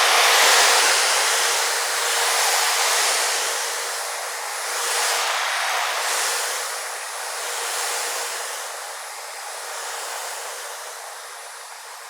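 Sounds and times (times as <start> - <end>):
electric hedge trimmer running: 0.0 - 1.4.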